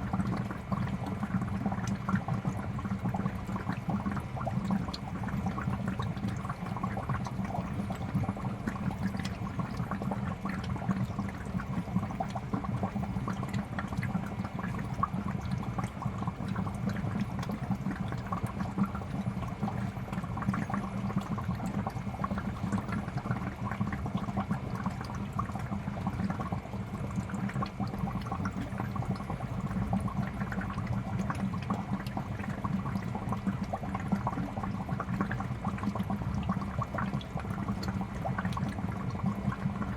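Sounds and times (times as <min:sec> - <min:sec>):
aquarium air bubbling: 0:00.0 - 0:39.9
low steady hum: 0:00.0 - 0:39.9.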